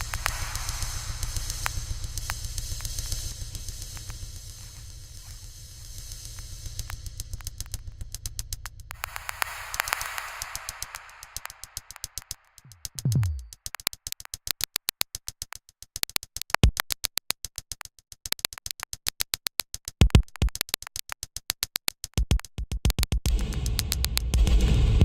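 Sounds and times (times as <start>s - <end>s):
sharp clicking ticks: 0.0s - 24.5s
deep bass hits: 12.8s - 13.5s.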